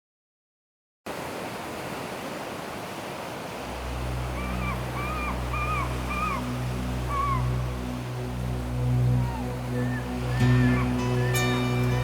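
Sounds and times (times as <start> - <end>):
ocean surf: 1.1 - 12.0
low sustained music tones: 3.6 - 12.0.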